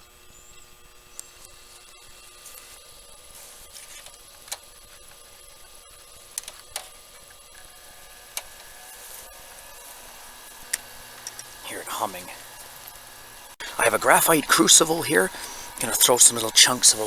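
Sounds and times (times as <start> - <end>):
faint high whine: 0.0 - 17.0
induction heater humming: 0.0 - 17.0
sharp clicks: 6.3 - 13.8.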